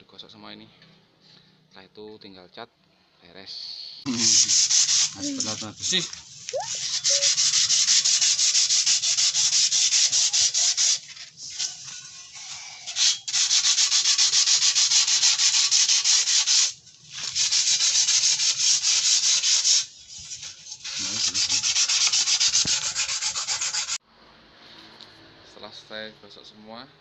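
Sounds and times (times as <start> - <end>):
sandpaper rubbing metal frame: 4.1 - 24.0.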